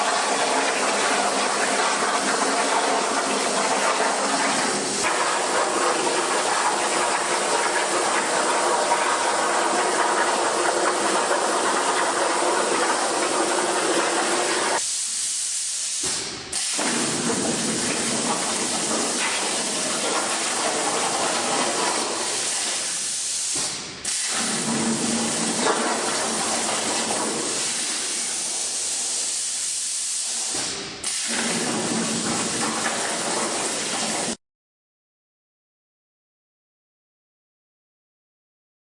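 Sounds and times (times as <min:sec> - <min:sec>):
plasma torch hissing: 0:01.8 - 0:05.8, 0:14.5 - 0:34.4.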